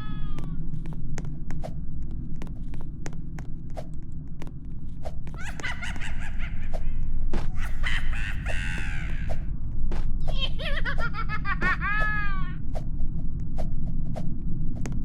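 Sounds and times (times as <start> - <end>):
steady low rumble: 0.0 - 15.0
animal calling with arching cries: 5.4 - 9.5.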